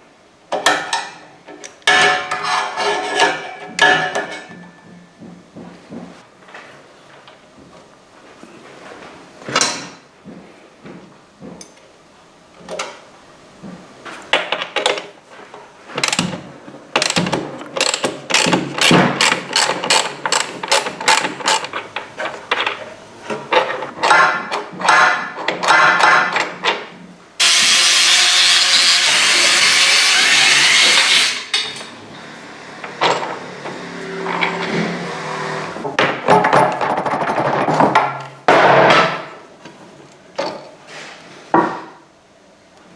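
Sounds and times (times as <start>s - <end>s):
ratchet clicks: 16.0s - 16.3s, 17.0s - 21.8s
loud steady hiss: 27.4s - 36.0s
metal knocks: 29.5s - 36.8s.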